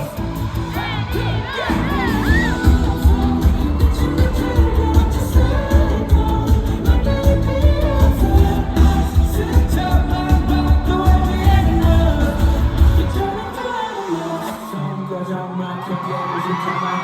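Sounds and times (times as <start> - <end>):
pounding bass beat: 0.0 - 13.5
person singing: 0.0 - 17.0
pop music over sound system: 0.0 - 17.0.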